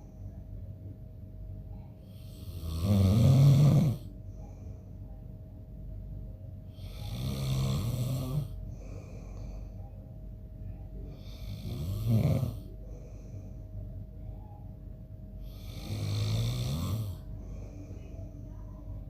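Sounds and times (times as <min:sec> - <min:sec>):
man snoring: 0:02.2 - 0:04.1, 0:06.8 - 0:09.0, 0:11.2 - 0:12.7, 0:15.5 - 0:17.2.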